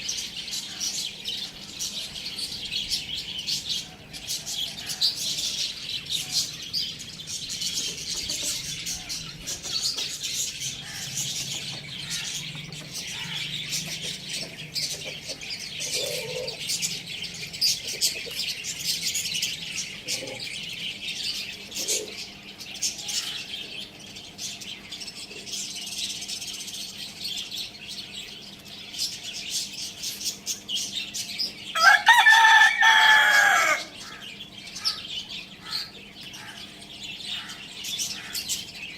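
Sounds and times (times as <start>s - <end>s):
small birds chirping: 0.0s - 38.9s
rooster crowing: 31.7s - 34.2s.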